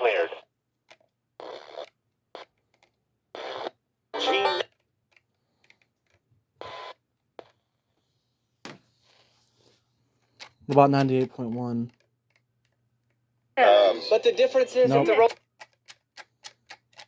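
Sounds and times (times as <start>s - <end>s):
radio station audio: 0.0s - 0.4s, 4.2s - 4.7s, 13.6s - 15.3s
sharp clicks: 15.3s - 17.0s.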